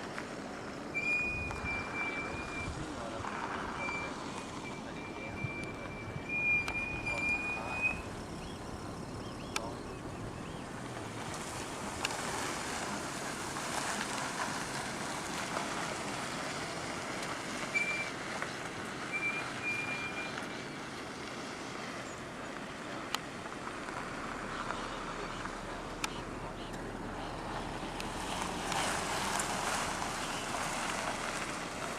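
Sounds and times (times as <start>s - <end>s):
floodwater rushing: 1.8s - 31.9s
high chirping tones: 3.7s - 10.8s.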